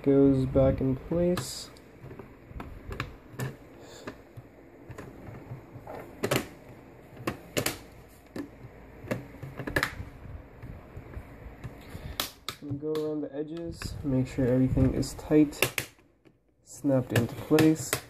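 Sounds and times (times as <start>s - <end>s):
plastic clips snapping into place: 11.6s - 13.9s, 15.5s - 16.4s.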